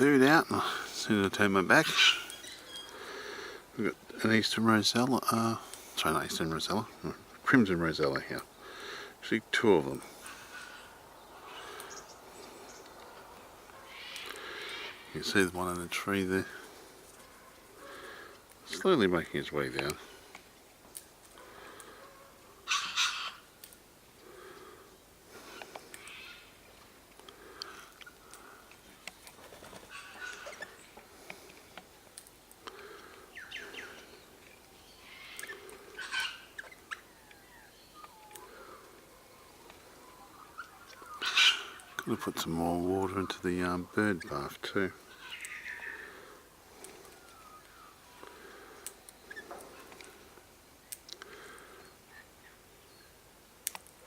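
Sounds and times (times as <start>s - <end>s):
birds calling: 0.0s - 53.4s
faint bird chirps: 1.9s - 3.1s, 10.2s - 15.4s, 32.8s - 44.4s, 45.0s - 53.2s
sharp clicks: 53.6s - 54.0s.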